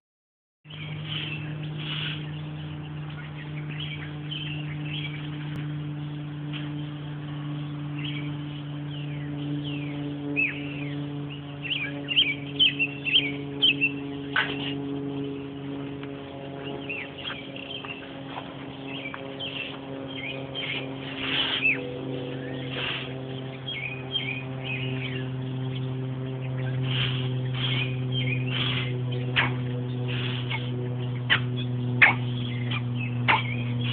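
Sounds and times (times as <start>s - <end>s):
steady low hum: 0.7s - 33.9s
pet bird chirping and calling: 8.9s - 15.0s, 18.8s - 33.9s.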